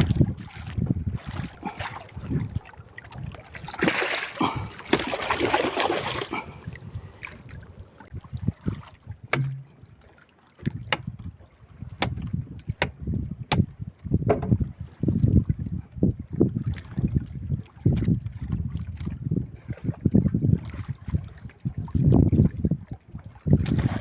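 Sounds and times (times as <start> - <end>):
wind on microphone: 0.0 - 10.0, 10.6 - 24.0
water splashing around boat: 0.0 - 24.0
sharp knocks: 9.3 - 9.7.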